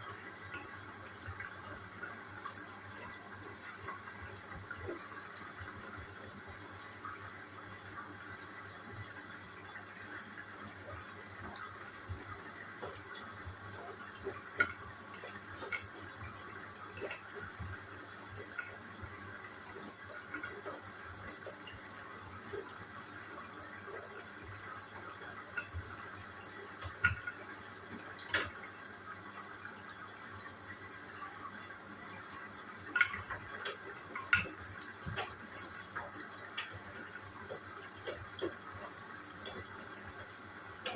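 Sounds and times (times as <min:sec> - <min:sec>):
water running into washing machine: 0:00.0 - 0:40.9
small splashes and clicks: 0:10.7 - 0:28.7, 0:32.2 - 0:40.9.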